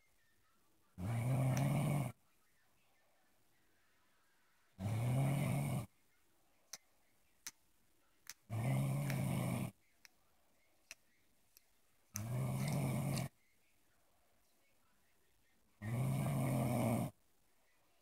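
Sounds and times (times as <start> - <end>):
loud snoring: 1.0 - 2.2, 4.8 - 5.9, 8.5 - 9.7, 12.2 - 13.3, 15.8 - 17.2.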